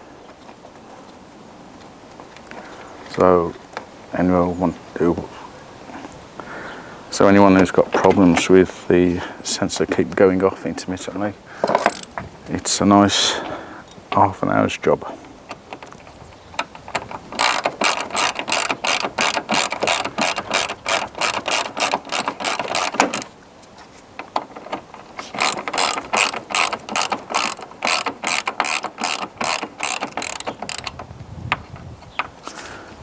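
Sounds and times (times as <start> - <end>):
ratchet wrench clicking: 11.7 - 12.1, 17.3 - 23.3, 25.4 - 31.0.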